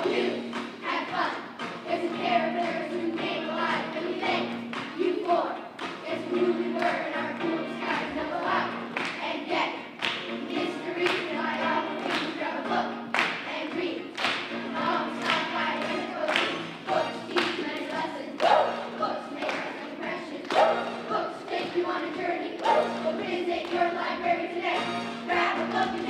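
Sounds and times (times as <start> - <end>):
children singing: 0.0 - 26.0
clapping: 8.9 - 9.2, 10.0 - 10.3, 11.0 - 11.2, 12.0 - 12.4, 13.1 - 13.5, 14.1 - 14.5, 15.2 - 15.5, 16.3 - 16.6, 19.4 - 19.7.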